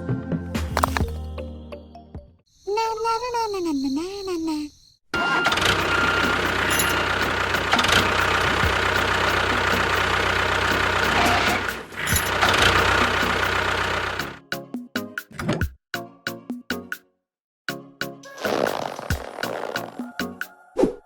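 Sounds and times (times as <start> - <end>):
motor vehicle engine running: 5.2 - 14.4.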